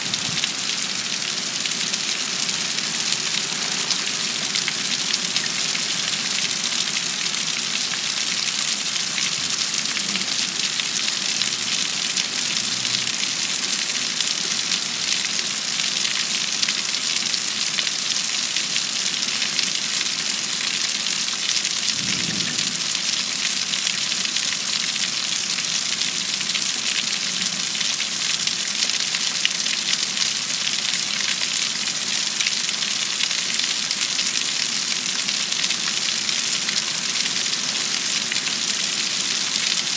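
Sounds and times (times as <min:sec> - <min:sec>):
heavy rain falling: 0:00.0 - 0:16.2, 0:20.5 - 0:28.0.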